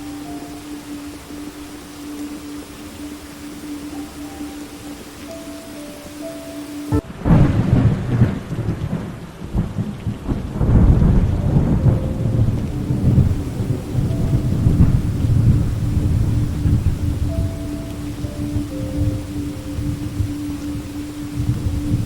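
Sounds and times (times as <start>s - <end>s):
rolling thunder rumbles: 0.0s - 22.0s
steady rain: 0.0s - 22.0s
thunderclap: 6.9s - 22.0s.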